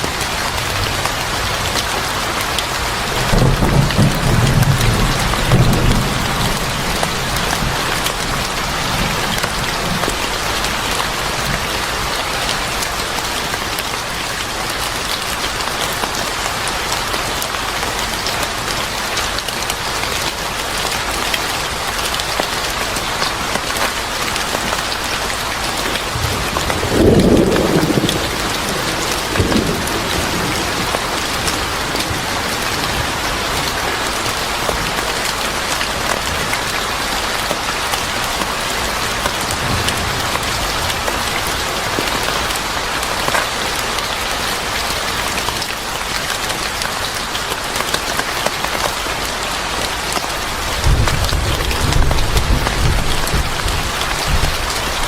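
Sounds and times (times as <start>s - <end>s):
steady rain falling: 0.0s - 55.0s
low rumble of thunder: 3.2s - 10.3s, 26.1s - 33.2s, 50.7s - 55.0s.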